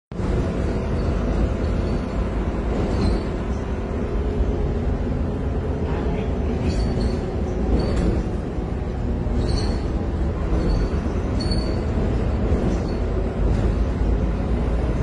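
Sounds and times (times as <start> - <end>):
bus engine rumbling: 0.1 - 15.0
faint high squeaks: 2.8 - 3.7, 6.6 - 8.3, 9.4 - 12.0.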